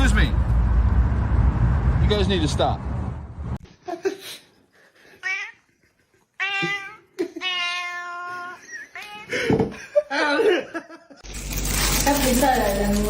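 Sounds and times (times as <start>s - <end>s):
cat meowing: 5.2s - 5.7s, 6.4s - 9.4s.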